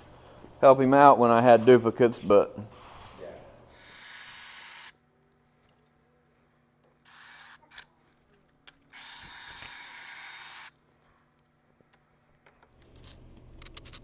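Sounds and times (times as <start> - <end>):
aerosol can hissing: 3.7 - 5.0, 9.0 - 10.7.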